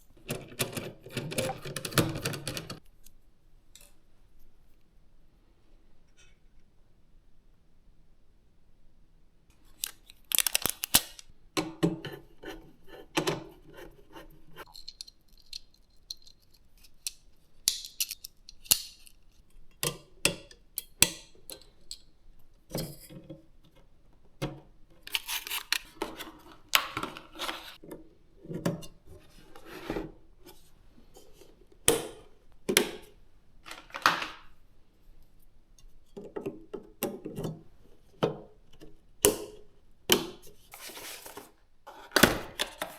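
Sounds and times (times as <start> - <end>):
short rustling scrapes: 29.1 - 31.6, 40.6 - 42.2.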